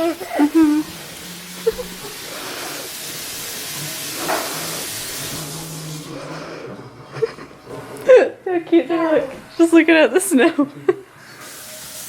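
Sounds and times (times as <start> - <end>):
steady hiss: 0.0 - 6.4, 11.4 - 12.0.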